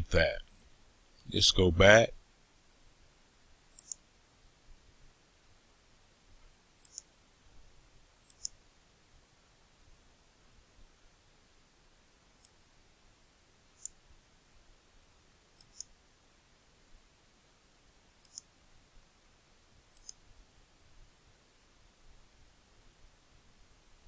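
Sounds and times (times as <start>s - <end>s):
faint room hiss: 0.0s - 24.0s
computer mouse clicking: 3.7s - 4.0s, 6.8s - 7.1s, 8.2s - 8.6s, 15.6s - 15.9s, 18.2s - 18.5s, 19.9s - 20.2s.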